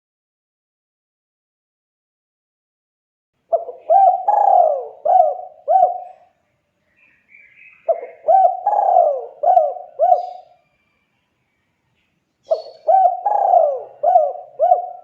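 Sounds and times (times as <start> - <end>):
dove cooing: 3.5 - 6.4, 7.8 - 10.6, 12.4 - 15.0.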